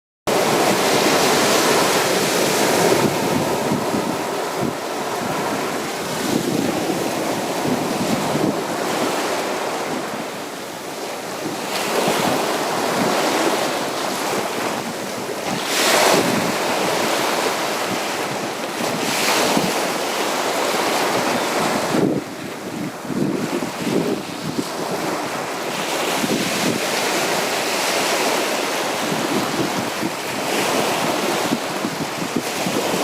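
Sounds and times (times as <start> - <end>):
sea waves washing: 0.3 - 33.0
waves breaking on beach: 0.3 - 33.0.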